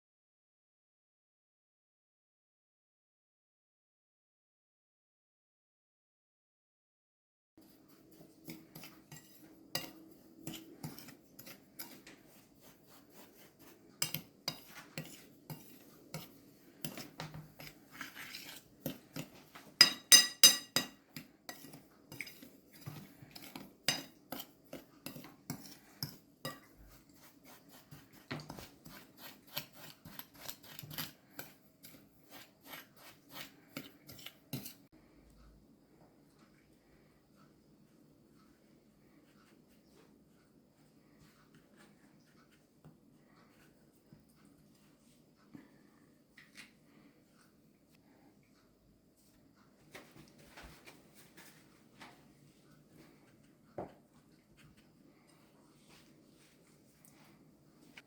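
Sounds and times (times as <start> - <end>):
utensils scraping: 7.9 - 34.9
utensils clinking against dishes: 18.2 - 26.7.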